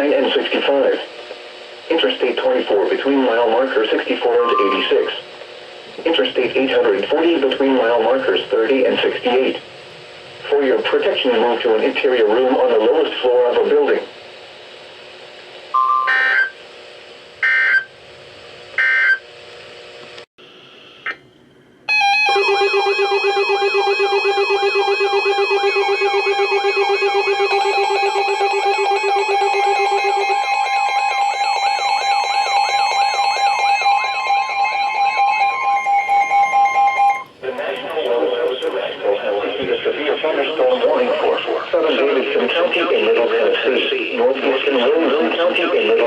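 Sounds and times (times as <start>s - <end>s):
digital header tone bursts: 4.2s - 5.3s
warbling attention tone: 4.2s - 5.3s
brief beep: 4.3s - 5.1s.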